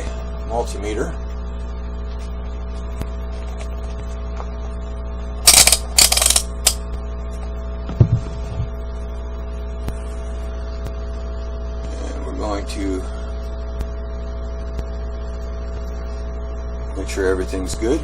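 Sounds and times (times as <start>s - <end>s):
electrical mains hum: 0.0s - 18.0s
soft low thump: 7.9s - 8.7s.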